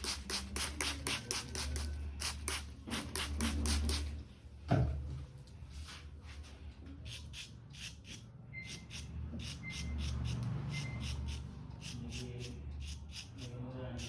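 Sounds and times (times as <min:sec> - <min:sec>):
razor scraping across scalp: 0:00.0 - 0:04.1, 0:07.0 - 0:14.0.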